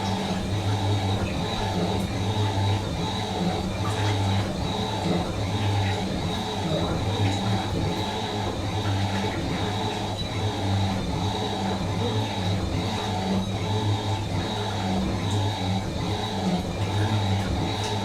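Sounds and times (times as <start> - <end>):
washing machine motor hum: 0.0 - 18.0.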